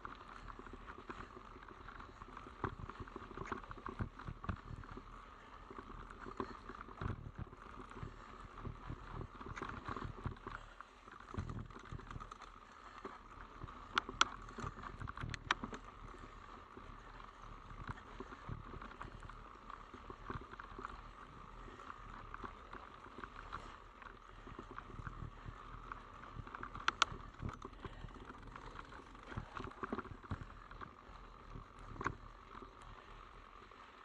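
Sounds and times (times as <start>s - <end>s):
sharp clicks: 26.6s - 27.7s.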